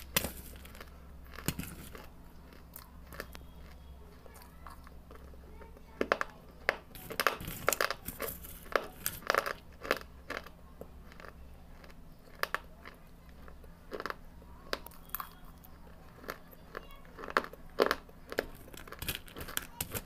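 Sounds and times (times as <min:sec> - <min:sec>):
clay being chewed: 0:00.0 - 0:20.0.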